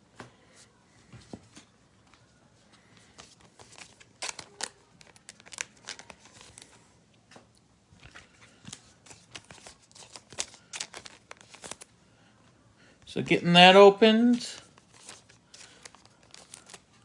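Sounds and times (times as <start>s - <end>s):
plastic wrapping crinkling and tearing: 3.2s - 6.8s, 8.0s - 11.9s, 14.5s - 17.0s.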